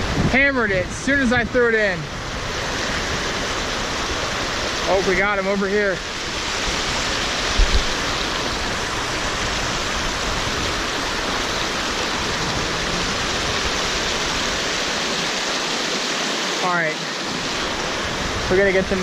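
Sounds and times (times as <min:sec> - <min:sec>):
fast-flowing stream water: 0:00.0 - 0:19.0
low thump: 0:07.5 - 0:08.0.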